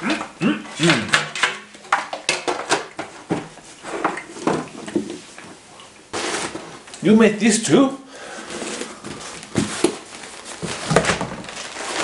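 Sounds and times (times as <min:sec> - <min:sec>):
packaging clicks and rustles: 0:08.4 - 0:12.0.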